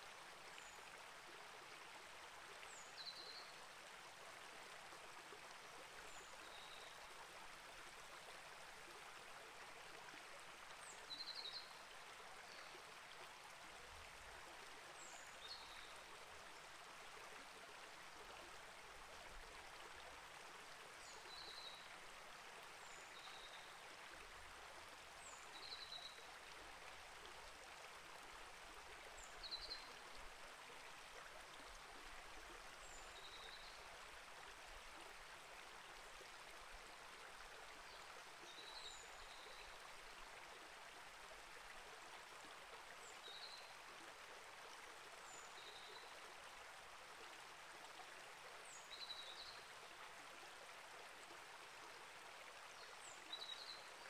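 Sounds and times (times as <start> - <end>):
creek flowing: 0.0 - 54.0.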